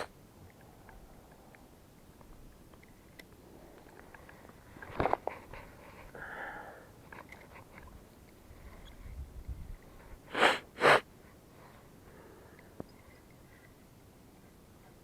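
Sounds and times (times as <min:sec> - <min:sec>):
person sniffing: 0:10.3 - 0:11.1.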